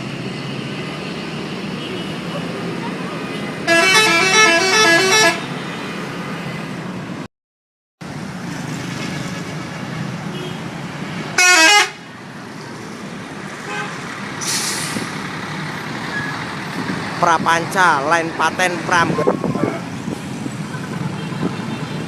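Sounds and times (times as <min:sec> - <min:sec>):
bus engine: 0:00.0 - 0:07.3, 0:08.0 - 0:22.0
traffic noise: 0:00.0 - 0:07.3, 0:08.0 - 0:22.0
multi-tone musical bus horn: 0:03.6 - 0:05.6, 0:11.3 - 0:12.1, 0:13.6 - 0:14.0
short hiss: 0:14.4 - 0:15.1.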